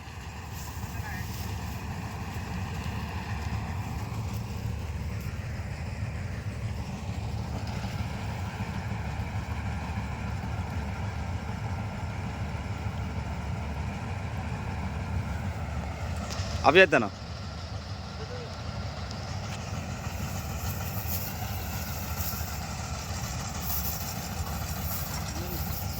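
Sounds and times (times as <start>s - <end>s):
harvester engine running: 0.0s - 25.9s.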